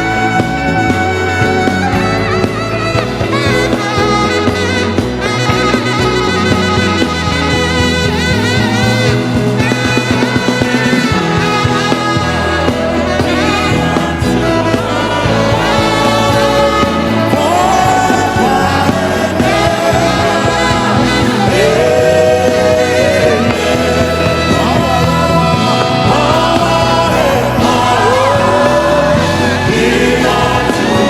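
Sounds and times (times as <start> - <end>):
band accompaniment: 0.0 - 31.0
person singing worship song: 12.4 - 31.0.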